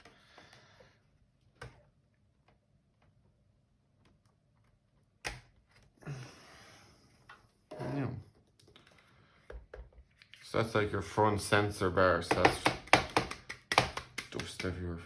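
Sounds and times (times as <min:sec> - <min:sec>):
sharp plastic snap: 0:12.3 - 0:14.8.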